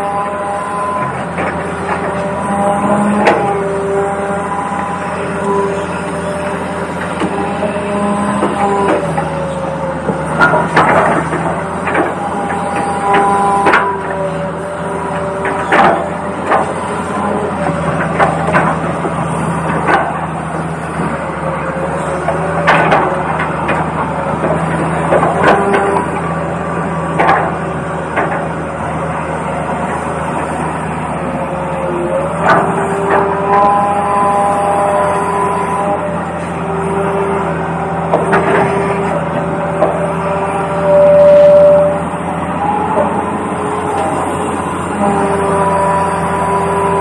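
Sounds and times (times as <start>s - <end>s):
low motor hum: 0.0s - 47.0s.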